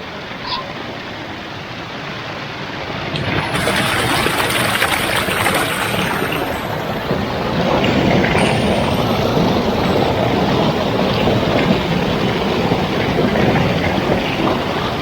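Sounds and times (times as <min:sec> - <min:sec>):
waterfall roaring: 0:00.0 - 0:15.0.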